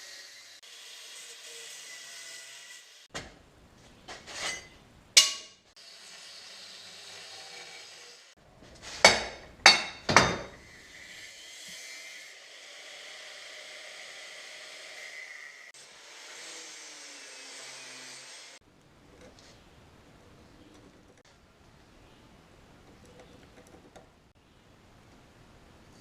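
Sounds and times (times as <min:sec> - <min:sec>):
power tool cutting steel: 0:00.0 - 0:03.1, 0:05.7 - 0:08.4, 0:10.6 - 0:18.6.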